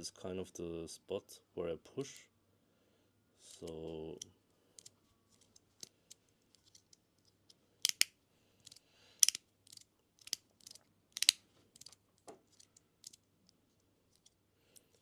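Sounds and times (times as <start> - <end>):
magnetic pieces clicking: 3.6 - 7.0, 7.8 - 13.3, 14.1 - 15.0.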